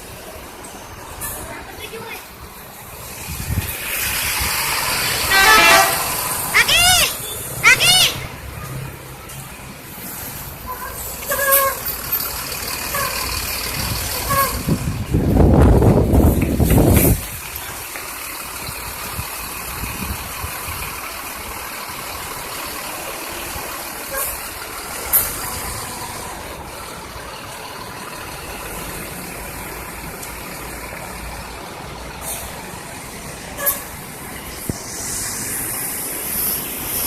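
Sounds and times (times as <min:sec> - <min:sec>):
bus engines rumbling: 0:00.0 - 0:37.0
air brake hisses: 0:33.6 - 0:37.0.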